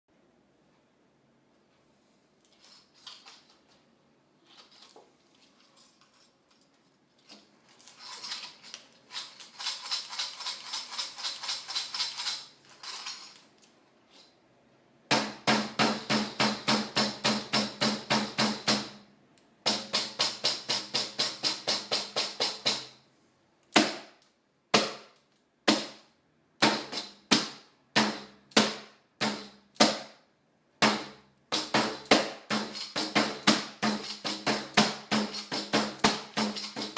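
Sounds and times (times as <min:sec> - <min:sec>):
frame drum with jingles: 0:31.6 - 0:36.9.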